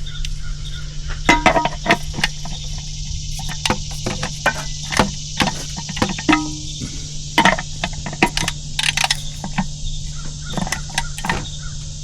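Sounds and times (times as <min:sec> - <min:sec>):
steady low hum: 0:00.0 - 0:12.0
tools knocking against metal: 0:01.3 - 0:06.7, 0:07.4 - 0:09.6, 0:10.5 - 0:11.5.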